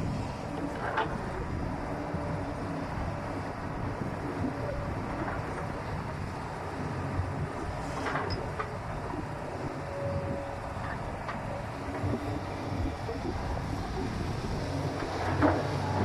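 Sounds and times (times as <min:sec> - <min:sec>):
diesel engines running: 0:00.0 - 0:16.0.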